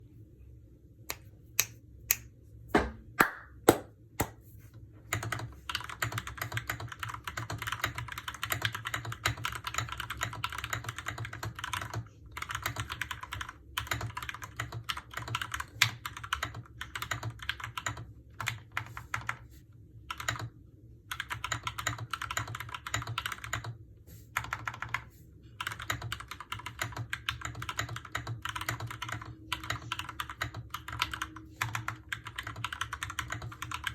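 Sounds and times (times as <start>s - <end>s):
mechanical keyboard typing: 5.1s - 19.4s, 20.1s - 20.5s, 21.1s - 23.8s, 24.4s - 33.9s.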